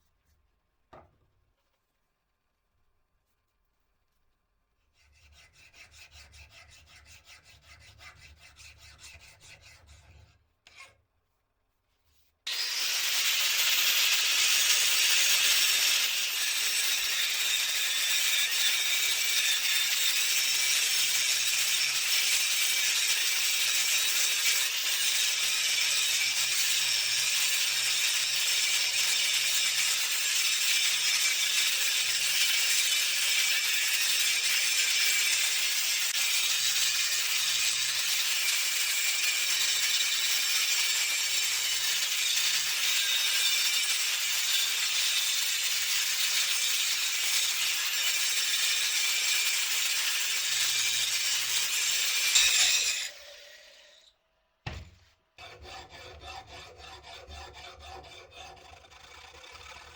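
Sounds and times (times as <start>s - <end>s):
file rasping on steel: 4.9s - 11.0s, 12.5s - 54.1s, 55.4s - 59.9s
angle grinder cutting steel: 12.5s - 54.1s, 55.4s - 59.9s.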